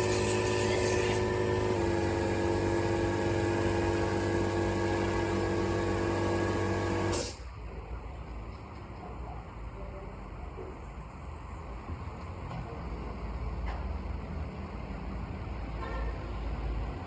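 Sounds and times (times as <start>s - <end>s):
motor humming: 0.0s - 7.3s
hiss: 7.1s - 7.5s.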